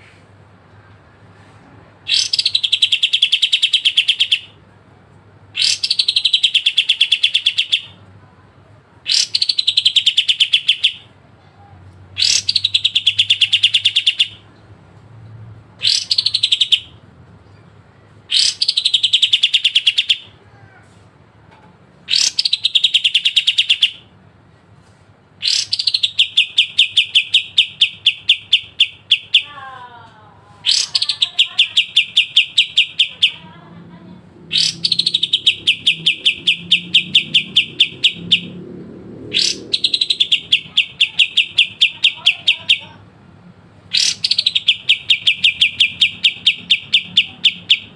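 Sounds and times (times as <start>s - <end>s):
bird singing a rapid trill: 2.1s - 4.6s, 5.6s - 8.0s, 9.1s - 11.1s, 12.2s - 14.4s, 15.8s - 17.0s, 18.3s - 20.3s, 22.1s - 24.1s, 25.4s - 29.8s, 30.7s - 33.5s, 34.5s - 38.6s, 39.3s - 43.0s, 43.9s - 47.9s.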